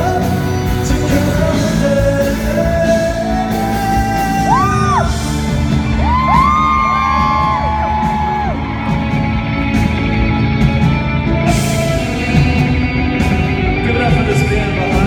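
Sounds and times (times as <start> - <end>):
live band with guitar: 0.0 - 15.0
audience whooping and screaming: 4.4 - 10.2.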